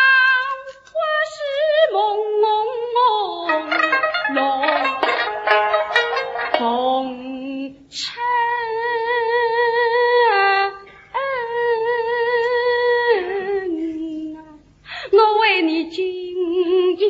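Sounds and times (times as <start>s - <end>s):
person singing long wavering notes: 3.5s - 7.3s.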